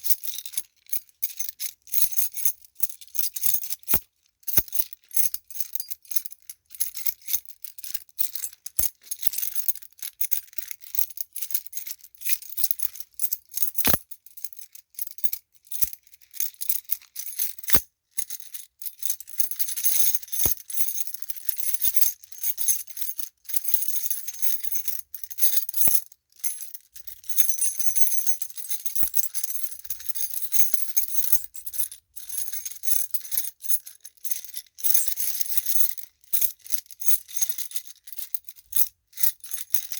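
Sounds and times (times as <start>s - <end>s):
metal keys jangling: 13.6s - 14.1s, 27.0s - 32.6s.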